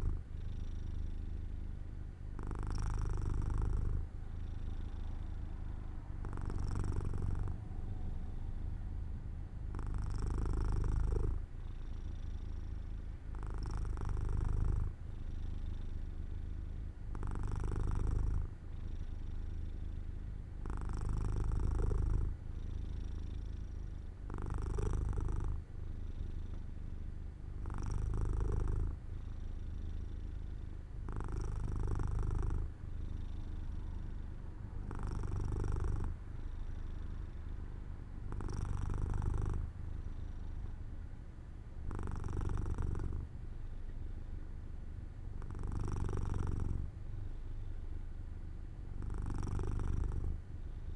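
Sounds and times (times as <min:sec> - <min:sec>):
cat purring: 0:00.0 - 0:50.9.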